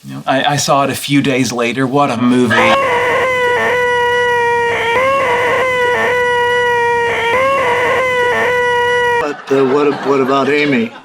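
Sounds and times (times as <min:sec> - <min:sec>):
man making nasal whine: 0:02.5 - 0:09.2.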